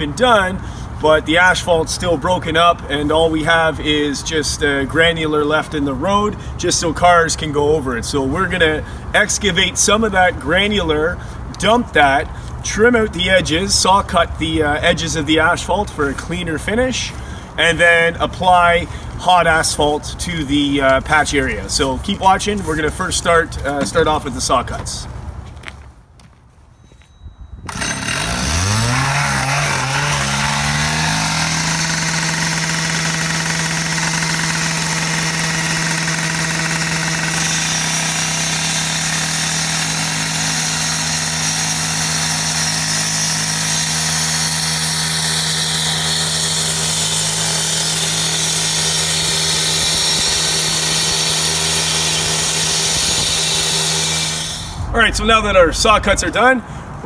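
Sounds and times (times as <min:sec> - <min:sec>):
gas-powered saw cutting asphalt: 0:27.7 - 0:56.4.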